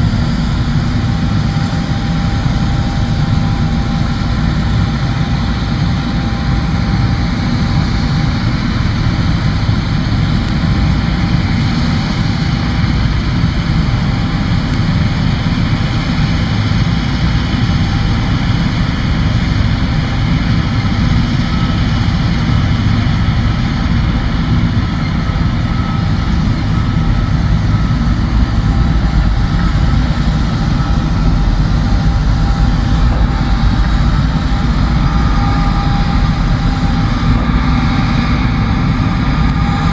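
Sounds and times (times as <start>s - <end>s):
combine harvester droning: 0.0s - 39.9s
faint steady whine: 0.0s - 39.9s.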